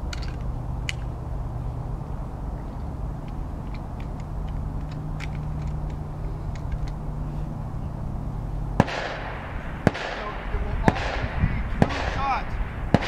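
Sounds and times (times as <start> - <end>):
low hum: 0.0 - 13.0
light clicks: 2.7 - 7.0
shotgun shot: 8.8 - 13.0.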